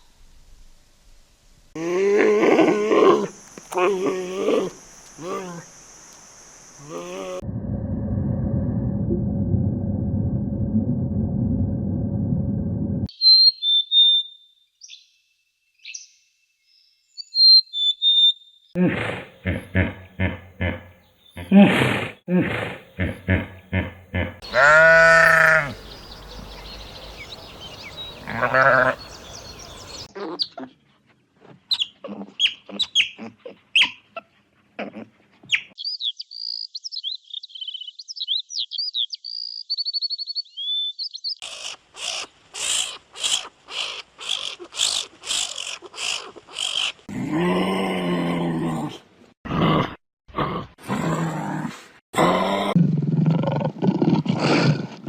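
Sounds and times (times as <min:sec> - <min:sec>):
high bird chirps: 0:13.1 - 0:15.1, 0:24.4 - 0:30.1, 0:35.5 - 0:41.4
long bleat-like animal call: 0:24.4 - 0:25.8, 0:28.2 - 0:29.1.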